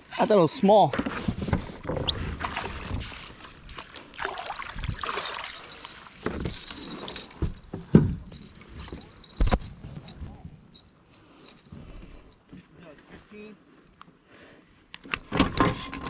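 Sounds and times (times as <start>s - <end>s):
water splashing around a kayak: 1.2s - 9.3s.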